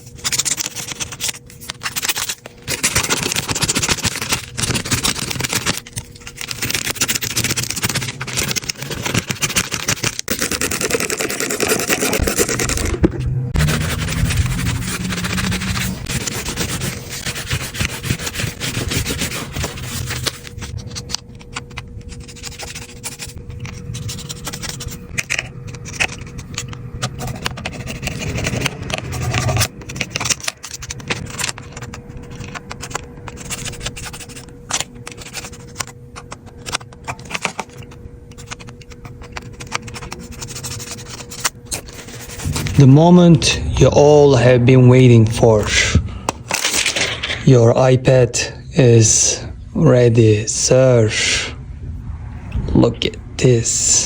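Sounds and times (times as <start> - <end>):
hand rubbing on a tablet: 13.6 - 25.1, 38.4 - 44.2.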